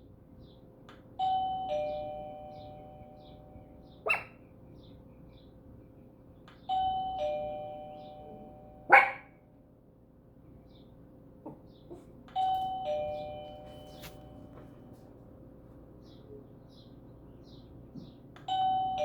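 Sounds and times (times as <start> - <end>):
two-tone doorbell chime: 1.2 - 3.8, 6.7 - 8.9, 12.4 - 14.9, 18.5 - 19.0.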